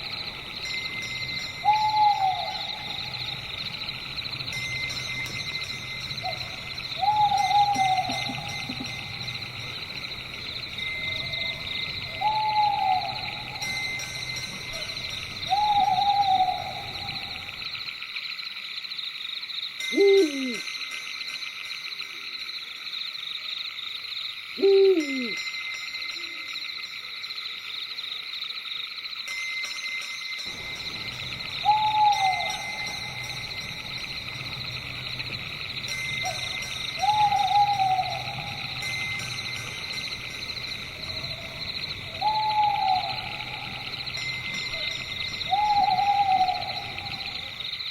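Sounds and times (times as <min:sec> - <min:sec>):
crickets chirping: 0:00.0 - 0:47.9
owl hooting: 0:01.6 - 0:03.4, 0:06.2 - 0:09.3, 0:11.1 - 0:13.8, 0:15.5 - 0:17.6, 0:19.9 - 0:20.6, 0:24.6 - 0:25.4, 0:31.1 - 0:33.6, 0:35.6 - 0:40.0, 0:40.8 - 0:47.7.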